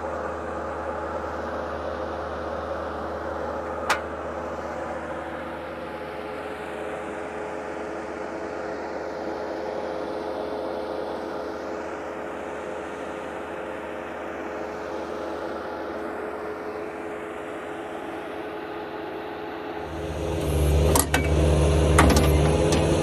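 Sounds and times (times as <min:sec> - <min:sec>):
skid steer engine running: 0:00.2 - 0:06.7, 0:19.6 - 0:23.0.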